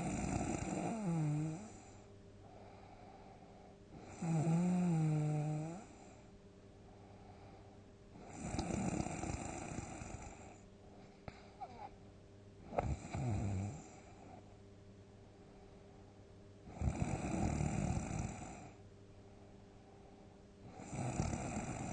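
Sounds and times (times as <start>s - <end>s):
person snoring heavily: 0.0s - 1.8s, 4.0s - 6.0s, 8.2s - 10.5s, 12.7s - 14.0s, 16.7s - 18.8s, 20.8s - 21.9s.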